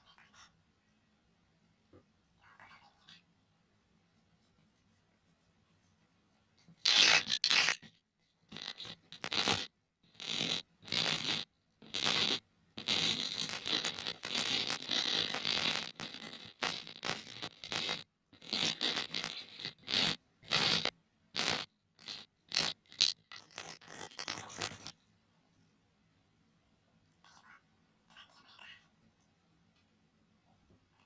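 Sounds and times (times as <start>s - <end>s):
earphones scraped with rasps: 6.6s - 25.0s.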